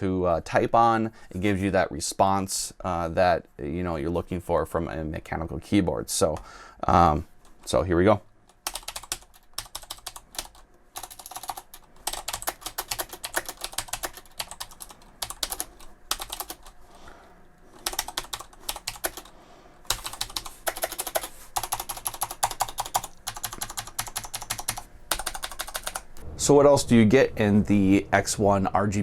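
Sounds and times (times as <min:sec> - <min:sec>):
clicky mechanical keyboard typing: 0:08.5 - 0:16.7, 0:17.8 - 0:19.3, 0:19.9 - 0:26.2.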